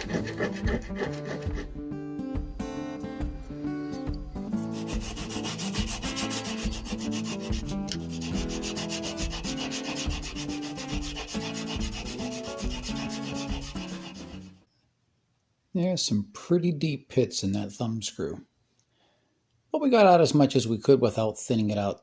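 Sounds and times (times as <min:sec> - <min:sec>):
abrasive scrubbing on steel: 0:00.0 - 0:01.7, 0:04.5 - 0:14.6.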